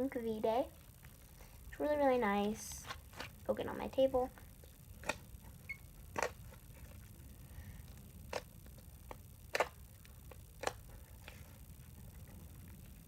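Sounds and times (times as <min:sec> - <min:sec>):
slime clicking and popping: 0:08.3 - 0:10.9.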